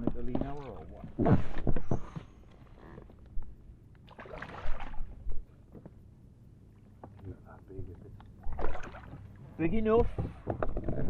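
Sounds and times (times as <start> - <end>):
water splashing: 4.0 - 5.2, 8.4 - 9.4.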